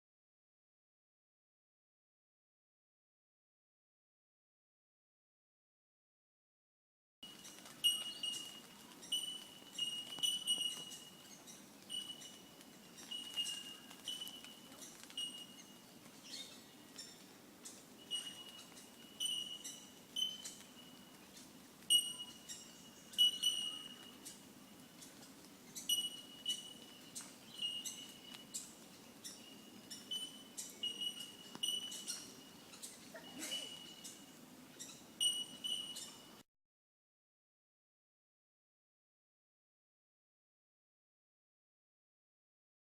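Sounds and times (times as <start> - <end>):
birds calling high tink notes: 7.2 - 36.4.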